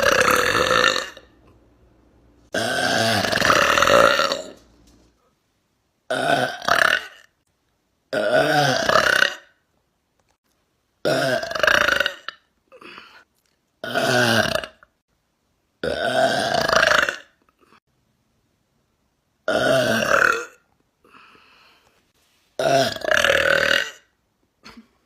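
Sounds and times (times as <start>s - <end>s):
woman burping: 0.0s - 1.3s, 2.6s - 4.6s, 11.0s - 13.1s, 19.5s - 20.6s, 22.6s - 25.0s.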